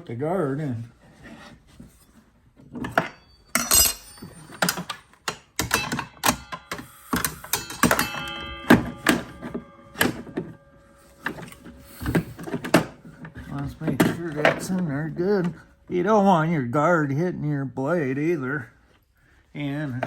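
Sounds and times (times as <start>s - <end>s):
metal parts knocking and clanking: 2.6s - 10.6s, 11.2s - 14.9s.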